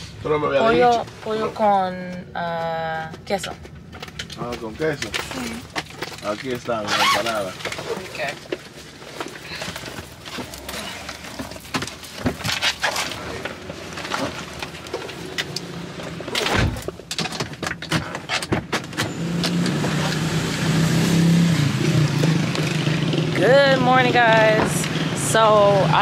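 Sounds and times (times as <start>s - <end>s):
knocks and clatter: 7.5s - 20.2s
vehicle engine running: 19.0s - 26.0s.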